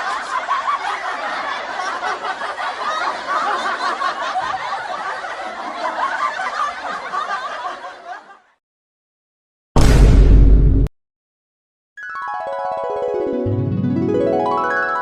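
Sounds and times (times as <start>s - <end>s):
people laughing: 0.0s - 8.6s.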